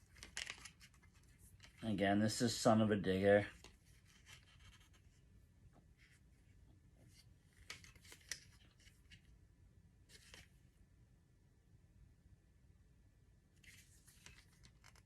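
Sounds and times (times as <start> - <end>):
faint clicks and rubs of handling: 0.0 - 1.9, 3.4 - 9.4, 10.1 - 10.6, 13.6 - 15.0.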